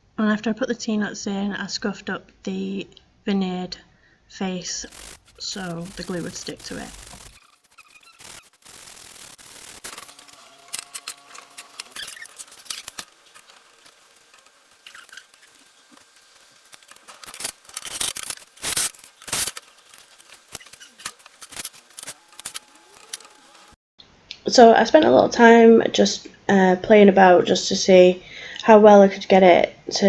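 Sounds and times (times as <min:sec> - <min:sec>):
scraping and rubbing on wood: 0:04.8 - 0:23.7
rasping scrapes: 0:04.8 - 0:23.8.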